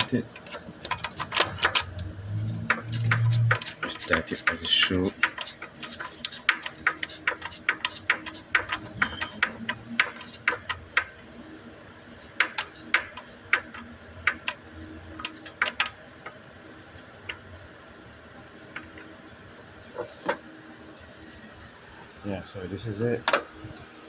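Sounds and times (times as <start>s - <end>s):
ratchet wrench clicking: 0.4s - 9.6s.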